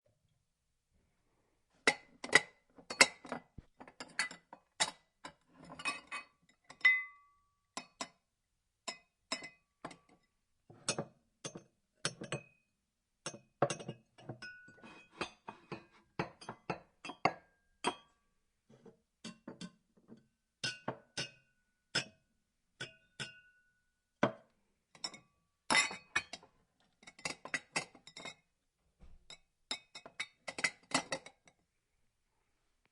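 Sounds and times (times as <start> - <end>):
glasses clinking: 25.0 - 26.4.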